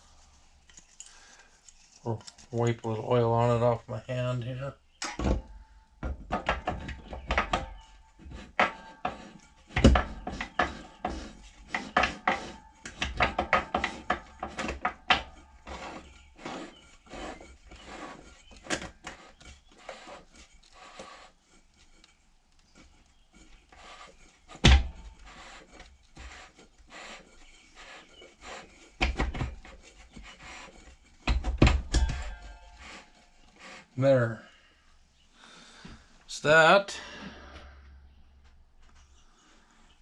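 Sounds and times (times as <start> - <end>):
parts clicking and scraping: 0.2 - 3.1, 5.0 - 34.3.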